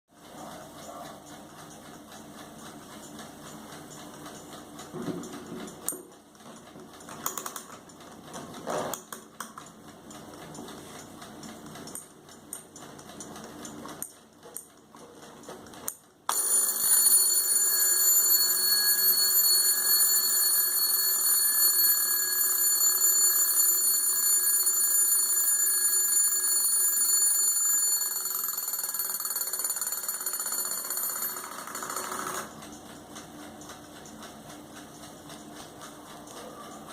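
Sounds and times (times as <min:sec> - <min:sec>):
faint clicks and knocks: 0:00.2 - 0:17.0, 0:28.2 - 0:36.9
alarm clock ringing: 0:16.3 - 0:32.6.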